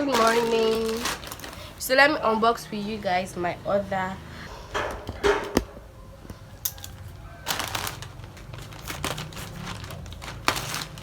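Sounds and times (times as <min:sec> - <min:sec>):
packaging rustling and crinkling: 0:00.0 - 0:02.0, 0:06.3 - 0:11.0.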